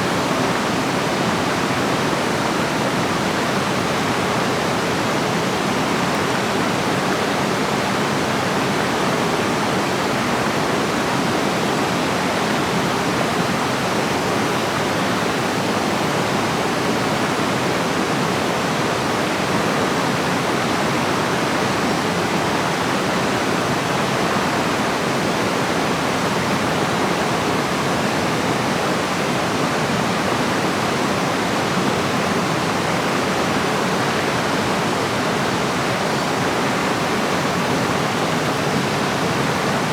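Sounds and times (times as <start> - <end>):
water rushing: 29.9 - 39.9.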